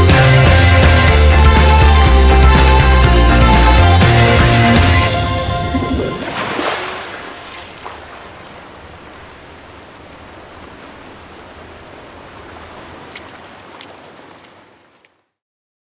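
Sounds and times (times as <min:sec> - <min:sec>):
surf washing on a beach: 0:05.6 - 0:15.3
faint clicks: 0:11.4 - 0:15.2.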